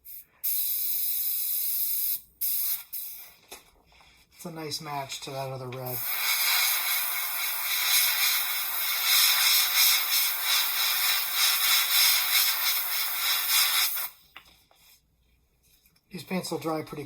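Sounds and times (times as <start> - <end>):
airbrush hissing: 0.0 - 3.4, 5.9 - 14.2.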